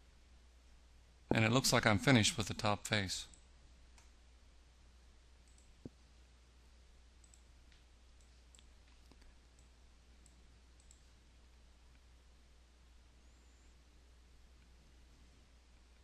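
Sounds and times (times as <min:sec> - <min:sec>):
low steady hum: 0:00.0 - 0:16.0
computer mouse clicks: 0:05.4 - 0:06.0, 0:07.2 - 0:11.1.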